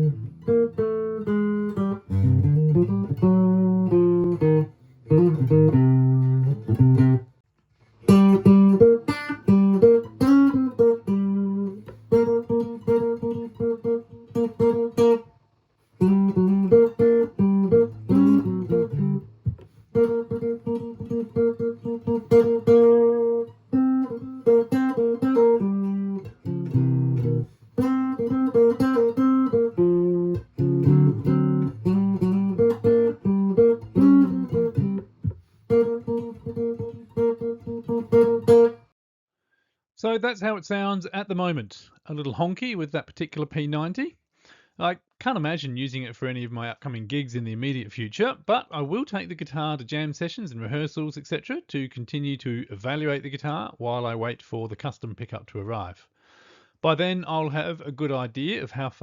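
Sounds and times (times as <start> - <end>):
electric guitar chords: 0.0 - 7.2, 8.1 - 15.2, 16.0 - 38.8.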